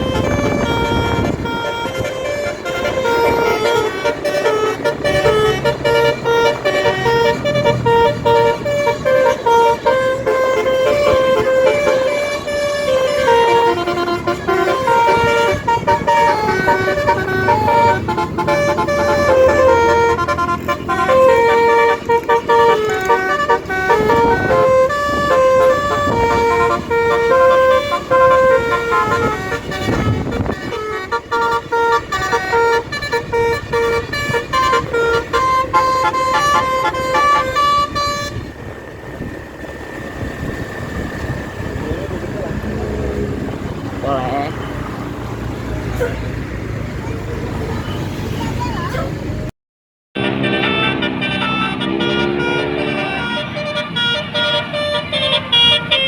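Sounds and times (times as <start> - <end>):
multi-tone air horn melody: 0.0 - 45.0, 50.2 - 56.0.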